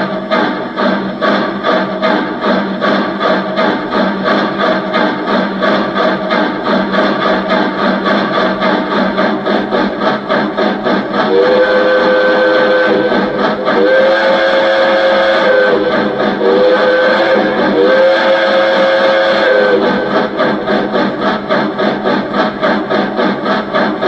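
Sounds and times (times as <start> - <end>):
steam chuffing: 0.0 - 24.0
multi-tone steam whistle: 10.9 - 23.9.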